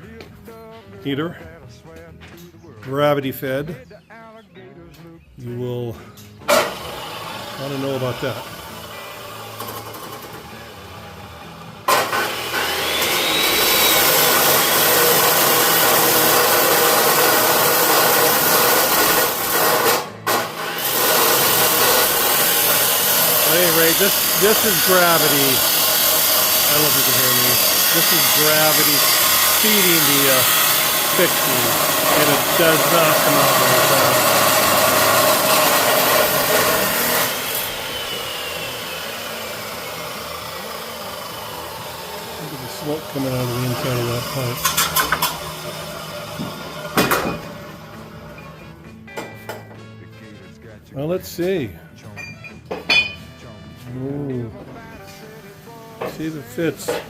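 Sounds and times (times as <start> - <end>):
electric power tool running: 6.4 - 48.6.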